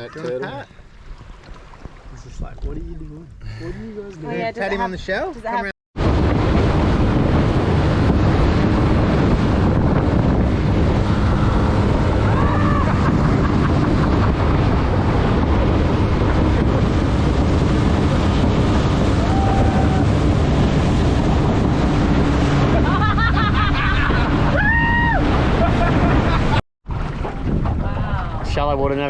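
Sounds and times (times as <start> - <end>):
boat motor droning: 5.5 - 29.0
wind noise on microphone: 6.0 - 29.0.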